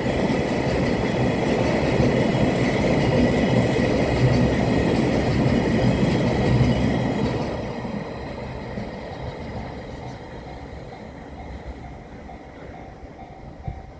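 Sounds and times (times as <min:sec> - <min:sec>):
train wheels clattering over rail joints: 0:00.1 - 0:07.7
faint repeating warning bell: 0:10.0 - 0:13.9.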